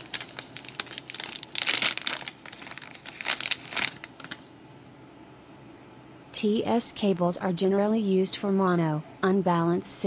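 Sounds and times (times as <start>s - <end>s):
crinkling and rustling: 0.0s - 4.5s.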